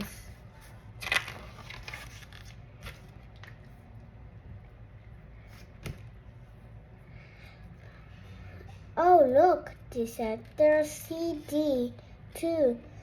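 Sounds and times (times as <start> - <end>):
book page rustling: 0.6 - 3.7.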